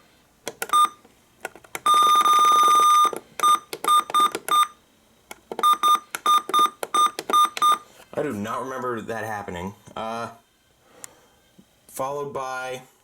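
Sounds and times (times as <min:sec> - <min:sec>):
electronic beeps: 0:01.8 - 0:04.8, 0:05.6 - 0:07.8.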